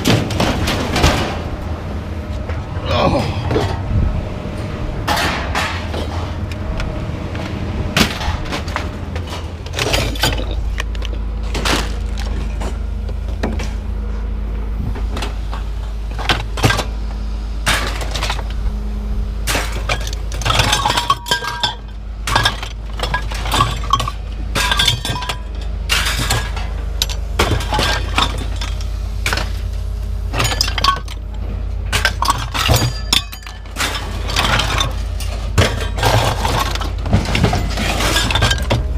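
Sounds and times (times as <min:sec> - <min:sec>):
scrap metal clanking onto pile: 0:00.0 - 0:01.6, 0:05.0 - 0:06.5, 0:08.0 - 0:12.8, 0:15.1 - 0:16.9, 0:17.6 - 0:18.6, 0:19.4 - 0:38.9
low engine rumble: 0:00.0 - 0:38.9.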